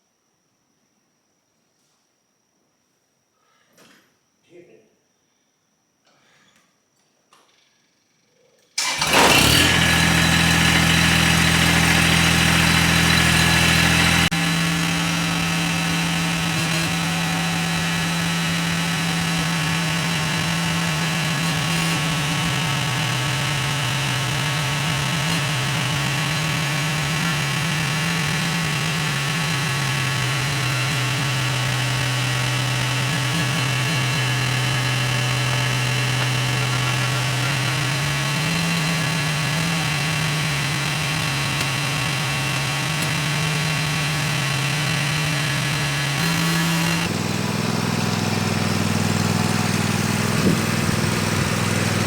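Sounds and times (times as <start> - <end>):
engine starting and running: 8.8 - 52.0.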